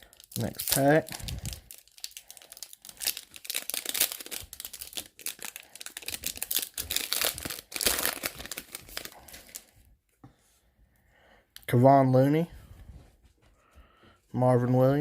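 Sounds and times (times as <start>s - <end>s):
foil wrapper crinkling and tearing: 0.0s - 9.7s.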